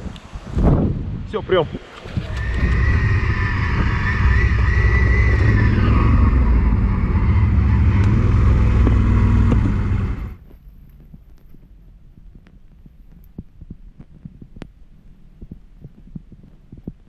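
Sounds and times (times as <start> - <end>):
atv engine running: 2.0 - 11.8
wavering high whine: 2.2 - 10.4.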